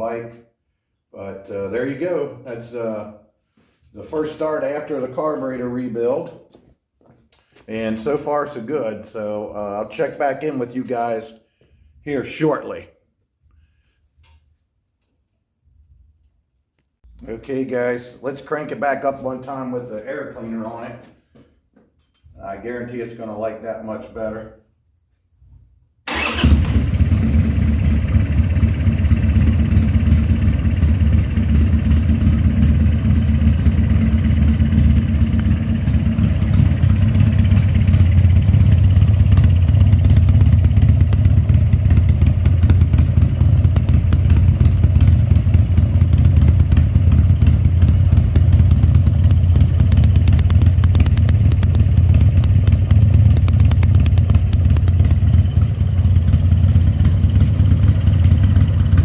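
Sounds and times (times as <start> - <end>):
motorcycle engine running: 26.1 - 59.0.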